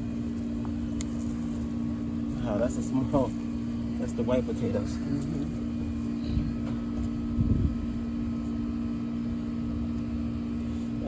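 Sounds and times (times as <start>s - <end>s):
steady mechanical hum: 0.0s - 11.0s
low rumble: 5.4s - 8.1s.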